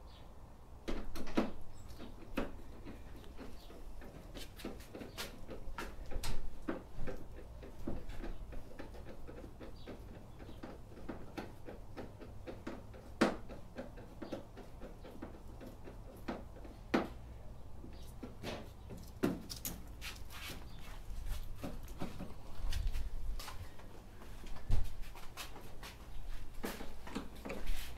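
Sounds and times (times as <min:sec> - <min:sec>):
hand tools clicking and knocking: 0:00.8 - 0:17.2, 0:26.6 - 0:27.9.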